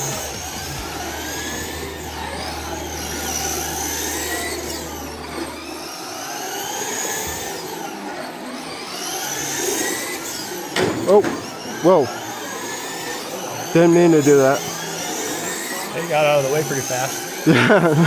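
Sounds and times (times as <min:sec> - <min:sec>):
rc car motors whining: 0:00.0 - 0:18.0.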